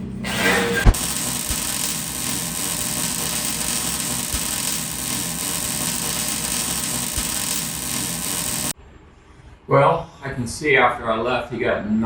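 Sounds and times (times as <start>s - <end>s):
power tool running: 0.3s - 8.8s.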